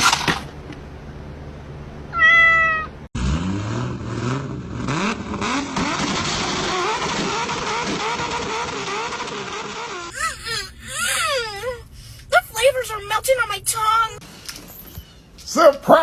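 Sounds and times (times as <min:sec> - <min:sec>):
cat meowing: 0:02.1 - 0:02.9.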